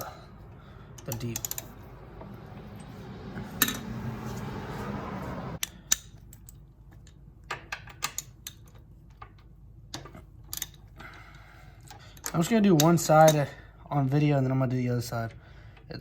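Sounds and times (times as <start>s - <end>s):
light metallic clicks: 0.9s - 2.9s.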